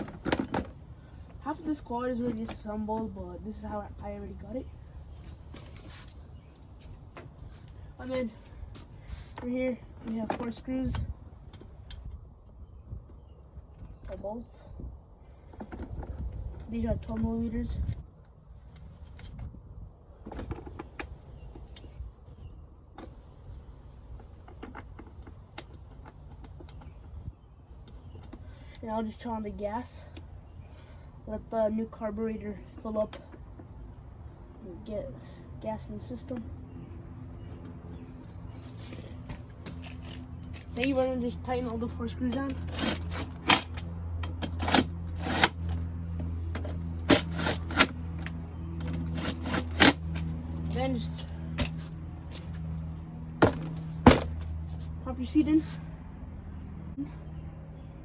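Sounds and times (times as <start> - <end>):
hand tool clicking on bolts: 42.3 - 45.8, 47.0 - 50.3.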